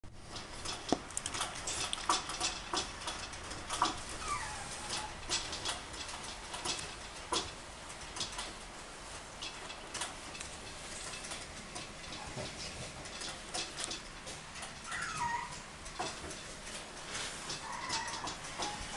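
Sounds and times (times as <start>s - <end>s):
puppy claws tapping: 0.4s - 4.3s
puppy squeak: 4.2s - 5.1s, 14.9s - 15.6s.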